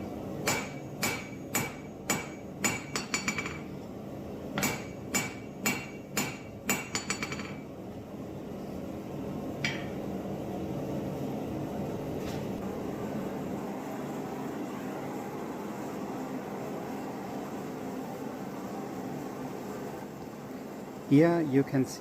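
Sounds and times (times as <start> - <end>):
hammer striking steel on anvil: 0.4 - 3.7, 4.6 - 7.6, 9.6 - 10.0.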